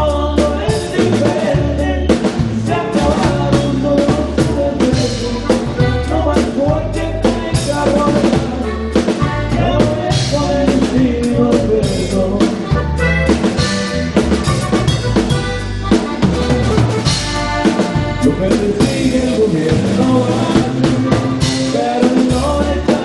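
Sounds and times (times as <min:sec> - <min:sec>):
drum kit beat: 0:00.0 - 0:23.0
pulsing bass: 0:00.0 - 0:23.0
melody instruments: 0:11.8 - 0:22.6.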